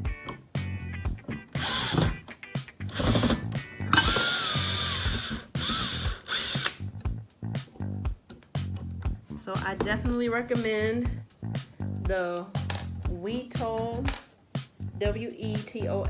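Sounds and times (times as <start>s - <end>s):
power drill driving screws: 1.6s - 2.2s, 2.9s - 6.8s.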